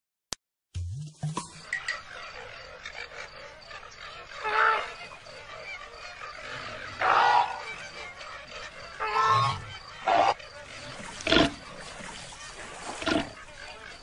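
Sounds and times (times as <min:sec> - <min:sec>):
loud animal-like cries: 0:06.8 - 0:07.7.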